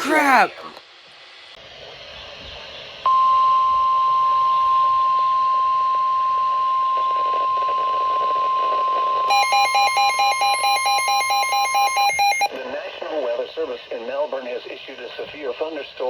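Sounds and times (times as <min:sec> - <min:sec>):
steady high alarm tone: 0:03.1 - 0:12.5
rapid beeping alarm: 0:09.3 - 0:12.5
faint radio static: 0:12.4 - 0:16.0.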